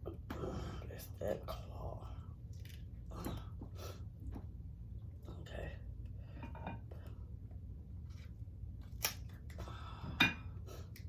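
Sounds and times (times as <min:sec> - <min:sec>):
crab shell cracking: 0:08.8 - 0:09.6.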